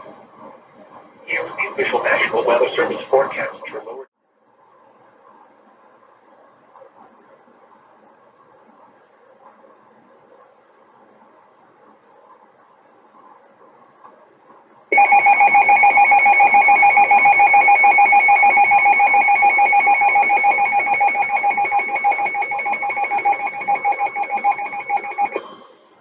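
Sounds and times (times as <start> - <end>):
steady electronic alert tone: 14.9 - 25.7.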